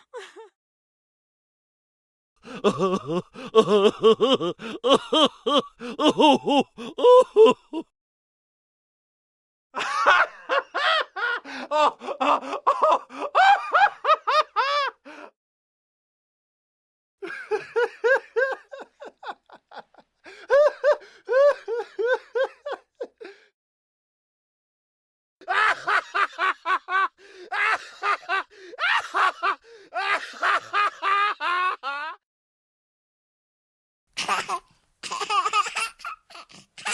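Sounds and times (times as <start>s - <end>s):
person laughing: 0.0s - 0.5s, 2.4s - 7.9s, 9.8s - 15.3s, 17.2s - 23.4s, 25.4s - 32.2s.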